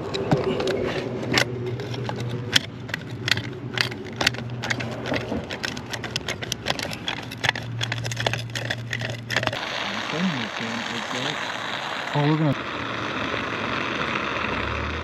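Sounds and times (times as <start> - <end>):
sharp clicks and knocks: 0.0 - 9.6
low engine-like hum: 0.0 - 15.0.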